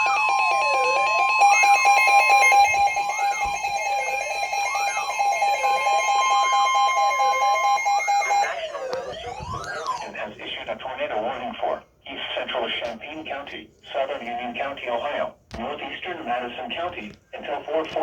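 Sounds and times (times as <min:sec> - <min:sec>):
steady alert tones: 0:00.0 - 0:10.2
sweeping siren-like tone: 0:00.0 - 0:10.2.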